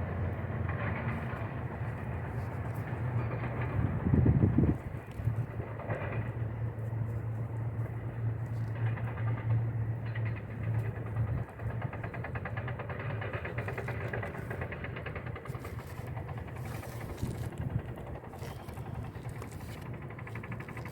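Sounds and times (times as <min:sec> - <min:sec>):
engine running with low hum: 0:00.0 - 0:20.9.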